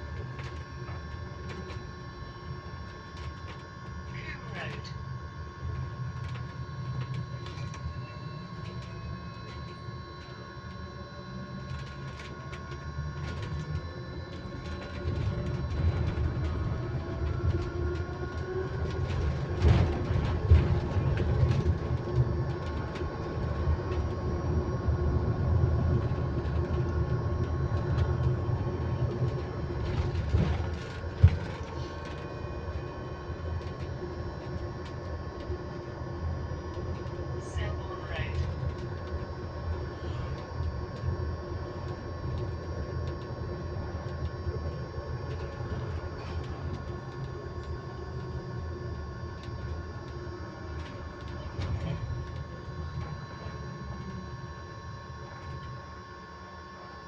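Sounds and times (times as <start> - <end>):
electric bus whine: 0.0 - 57.0
bus rattles and knocks: 11.6 - 35.5, 50.8 - 53.6.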